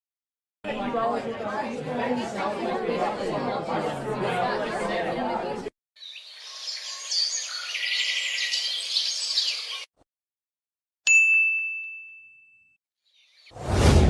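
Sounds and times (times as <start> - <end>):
busy chattering chirping noise: 2.2 - 9.9
bright bell ding: 11.1 - 12.8.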